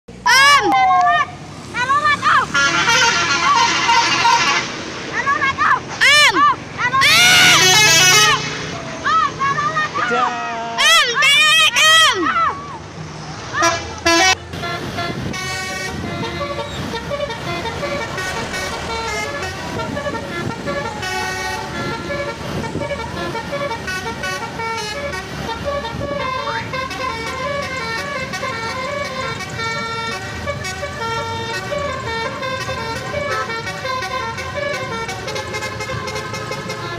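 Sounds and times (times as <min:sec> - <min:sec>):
musical horn tune: 0:02.4 - 0:04.9, 0:07.0 - 0:08.6, 0:13.6 - 0:36.9.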